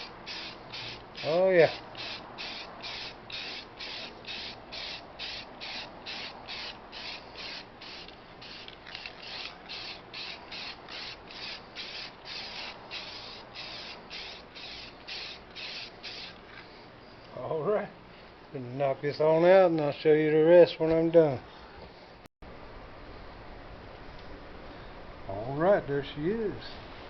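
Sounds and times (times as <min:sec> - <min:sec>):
aerosol spray can hissing: 0:00.0 - 0:16.4.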